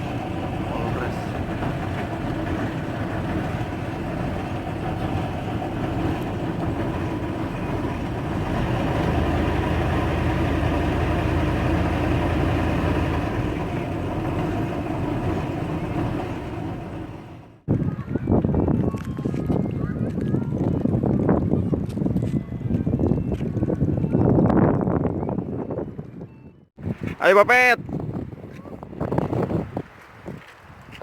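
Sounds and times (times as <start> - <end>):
engine running steadily: 0.0 - 17.7.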